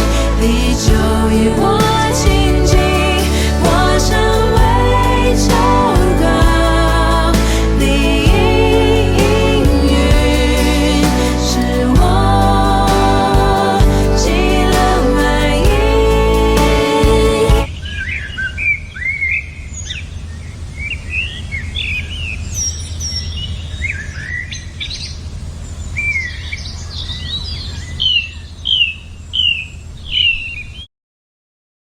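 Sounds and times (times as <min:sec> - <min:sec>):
gospel song: 0:00.0 - 0:17.7
songbirds chirping: 0:17.7 - 0:30.9.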